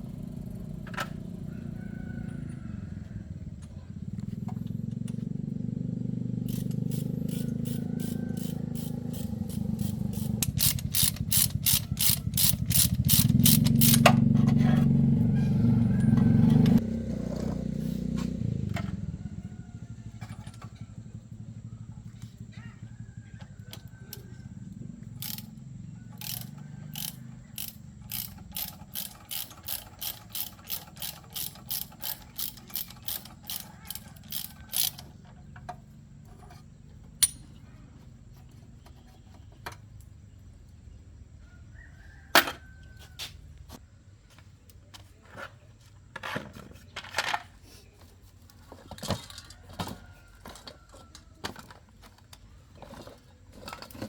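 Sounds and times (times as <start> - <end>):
evenly spaced tool clicks: 6.5 - 14.1, 25.2 - 25.5, 26.2 - 35.0
knocks and clinks on metal: 6.5 - 14.9, 37.1 - 37.7.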